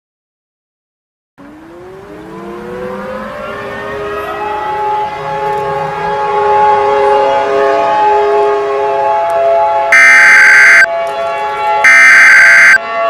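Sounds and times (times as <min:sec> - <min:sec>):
warning siren winding up: 0:09.9 - 0:10.9, 0:11.8 - 0:12.8.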